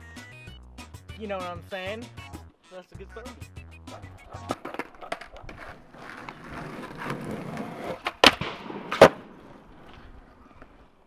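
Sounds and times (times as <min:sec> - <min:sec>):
skateboard clacks: 0:04.0 - 0:11.0
skateboard wheels rolling on pavement: 0:04.0 - 0:11.0.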